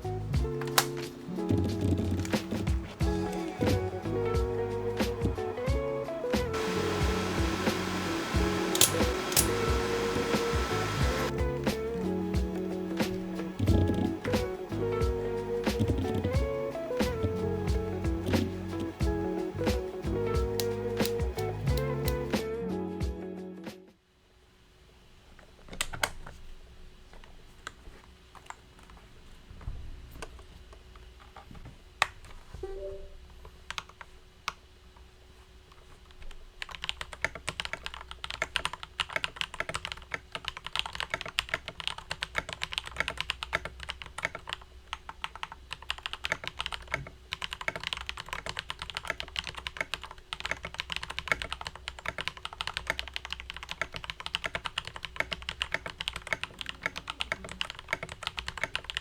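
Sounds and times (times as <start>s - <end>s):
typing on mechanical keyboard: 0.6s - 3.4s, 15.6s - 17.5s, 36.6s - 59.0s.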